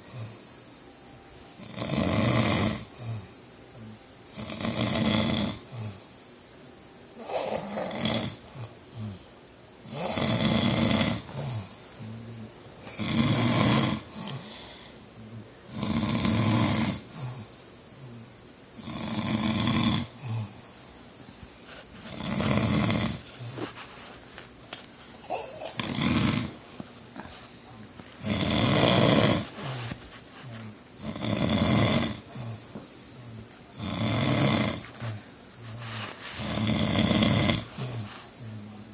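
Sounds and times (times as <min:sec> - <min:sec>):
man snoring loudly: 0:01.6 - 0:03.3, 0:04.3 - 0:06.0, 0:07.2 - 0:09.2, 0:09.8 - 0:14.6, 0:15.2 - 0:20.6, 0:22.1 - 0:23.2, 0:25.3 - 0:26.6, 0:28.2 - 0:29.8, 0:31.0 - 0:35.1, 0:36.4 - 0:38.8.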